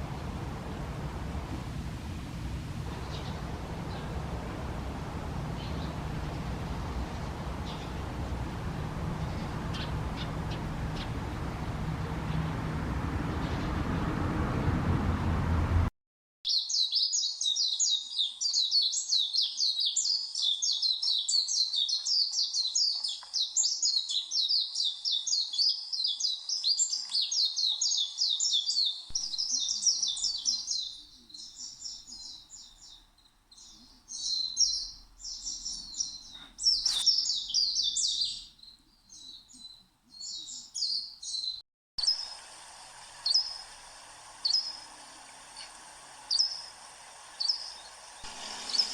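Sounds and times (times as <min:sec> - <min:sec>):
small birds chirping: 0:02.9 - 0:14.8, 0:16.5 - 0:48.9
faint hiss: 0:42.0 - 0:48.9.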